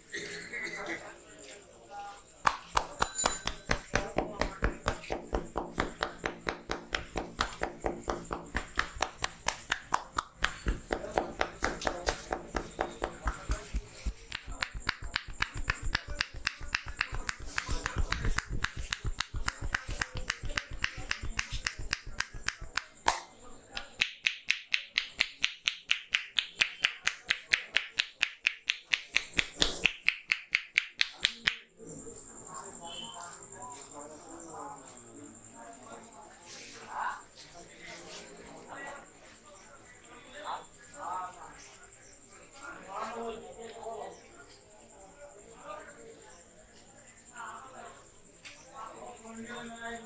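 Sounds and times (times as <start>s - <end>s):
hands slapping on head: 2.4s - 31.7s.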